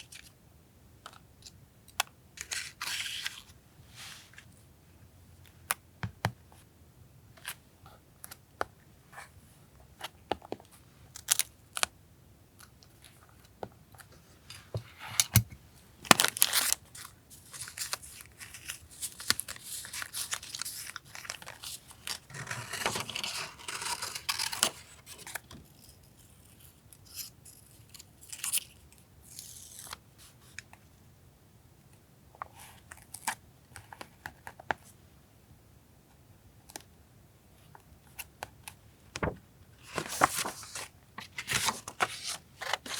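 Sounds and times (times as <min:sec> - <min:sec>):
paper rustling: 0:16.1 - 0:24.9, 0:39.2 - 0:42.9.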